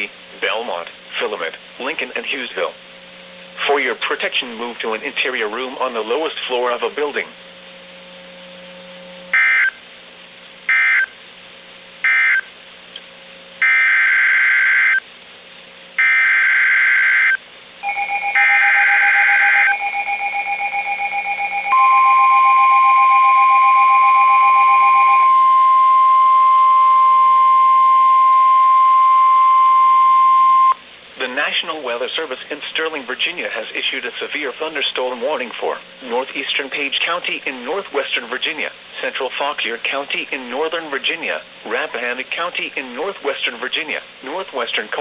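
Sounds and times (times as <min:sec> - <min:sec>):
harsh buzzing alarm tone: 0:09.3 - 0:09.8, 0:10.7 - 0:11.2, 0:12.0 - 0:12.5, 0:13.6 - 0:15.0, 0:16.0 - 0:30.8
steady warning tone: 0:16.0 - 0:30.8.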